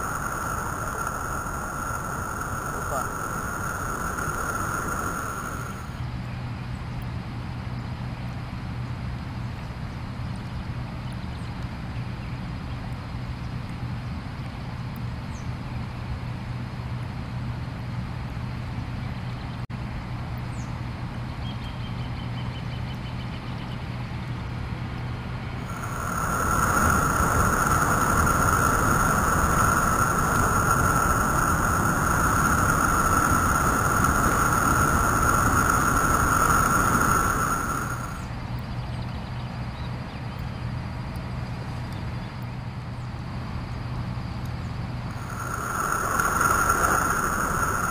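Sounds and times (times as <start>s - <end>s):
steady whistling whine: 0.0s - 6.0s, 25.4s - 40.6s, 45.0s - 47.9s
waterfall rushing: 0.0s - 6.0s.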